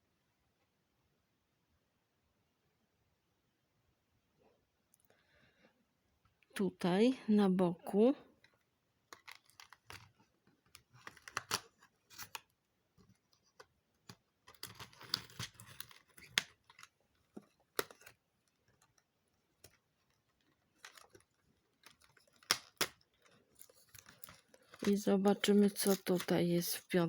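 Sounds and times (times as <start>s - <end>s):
cardboard and plastic rustling: 8.4s - 27.0s.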